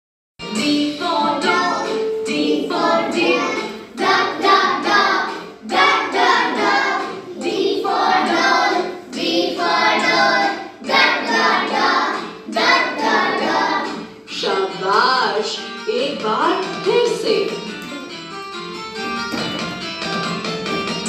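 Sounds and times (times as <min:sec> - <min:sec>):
music: 0:00.4 - 0:21.0
child singing: 0:00.6 - 0:15.0.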